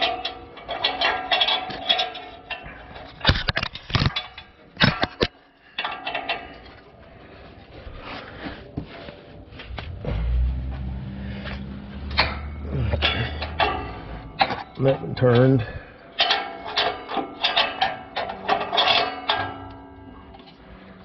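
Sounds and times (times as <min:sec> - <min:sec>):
wrench clinking on metal: 0:00.0 - 0:06.8, 0:11.7 - 0:21.0.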